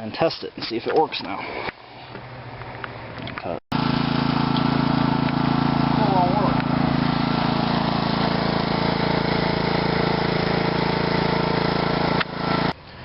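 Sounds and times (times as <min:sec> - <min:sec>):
pressure washer humming: 0:03.7 - 0:12.8.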